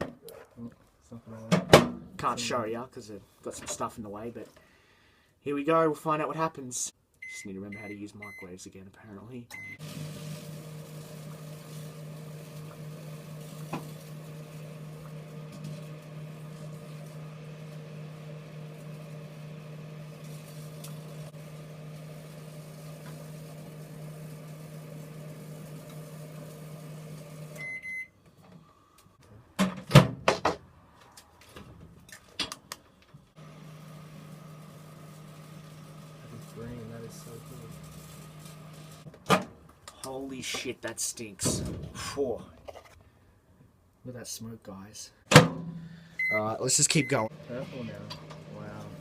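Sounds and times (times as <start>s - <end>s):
microwave beep: 7.2s - 8.5s, 9.5s - 10.0s, 27.4s - 28.2s, 46.2s - 47.2s
microwave oven humming: 9.7s - 28.1s, 33.4s - 39.0s, 47.3s - 49.0s.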